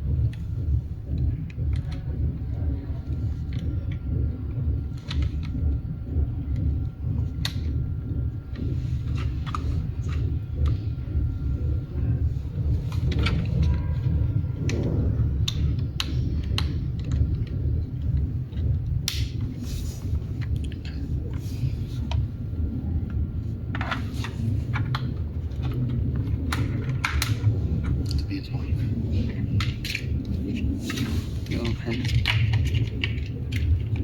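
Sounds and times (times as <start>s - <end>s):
steady low rumble: 0.0s - 34.0s.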